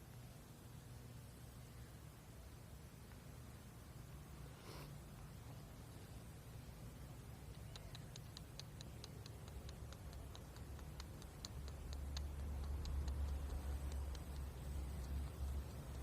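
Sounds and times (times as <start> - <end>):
sparrow chirping: 7.4 - 16.0.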